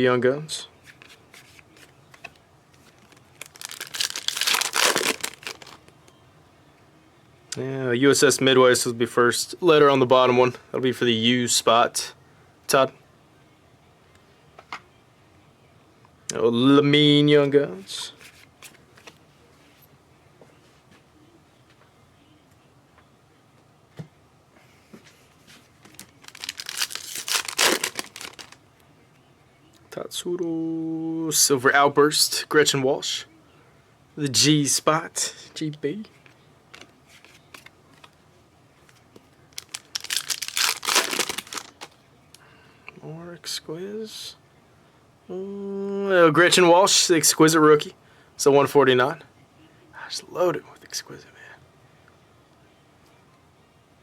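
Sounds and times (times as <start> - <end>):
foil wrapper crinkling and tearing: 2.8 - 5.9, 25.9 - 28.6, 39.5 - 42.0
faint clicks of cards handled: 36.1 - 38.2.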